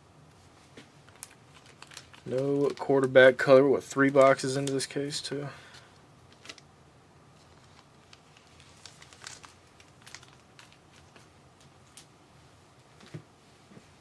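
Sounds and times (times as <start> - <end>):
cards and packaging rustling: 0.8 - 6.7, 7.4 - 12.1.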